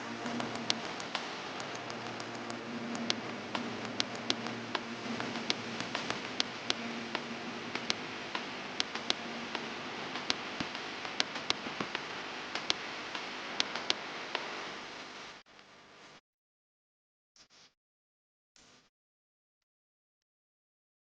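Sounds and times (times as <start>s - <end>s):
steady machinery noise: 0.0s - 14.0s.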